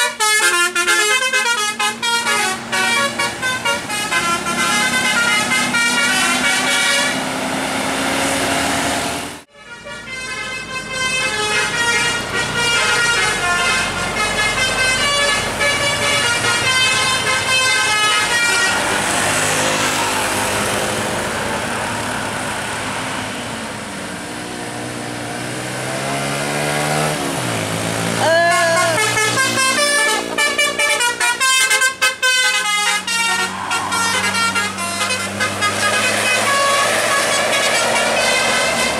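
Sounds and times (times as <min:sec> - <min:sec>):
multi-tone bus horn melody: 0:00.0 - 0:08.2, 0:09.4 - 0:21.5, 0:28.1 - 0:38.9
bus passing by: 0:00.0 - 0:38.9.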